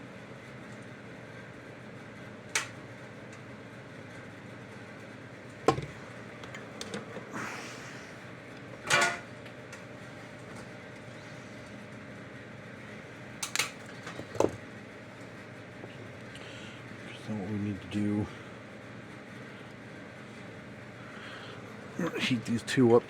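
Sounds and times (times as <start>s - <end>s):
steady background hum: 0.0s - 23.0s
tool knocking on workbench: 5.7s - 5.9s.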